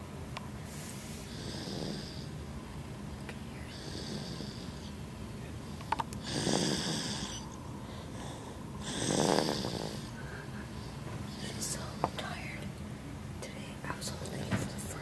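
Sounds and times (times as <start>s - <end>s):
baby snoring: 1.2s - 2.4s, 3.6s - 4.9s, 6.2s - 7.5s, 8.2s - 10.2s.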